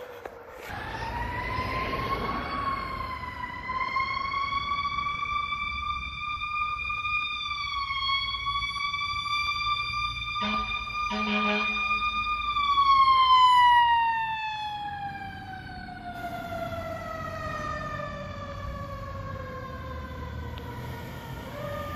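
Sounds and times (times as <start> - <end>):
air horn blasts: 10.4 - 12.0.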